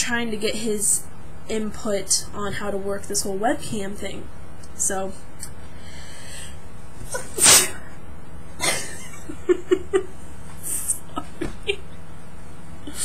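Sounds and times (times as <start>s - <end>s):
woman sneezing: 7.1s - 7.9s
woman giggling: 8.6s - 12.0s.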